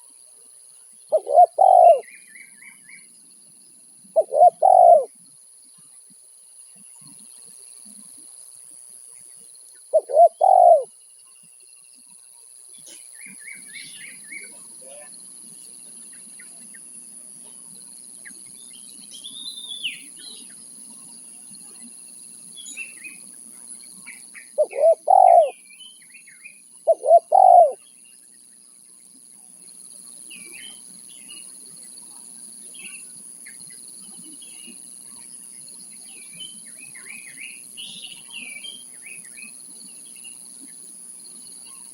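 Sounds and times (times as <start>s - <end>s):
small birds chirping: 0.6s - 8.2s, 9.1s - 41.9s
dove cooing: 1.1s - 2.1s, 4.2s - 5.1s, 9.9s - 10.9s, 24.6s - 25.6s, 26.9s - 27.8s.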